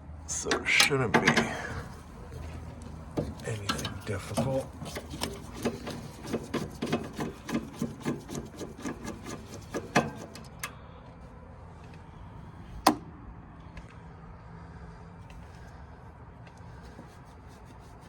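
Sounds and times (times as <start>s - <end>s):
metal parts clicking and scraping: 0.3s - 10.7s.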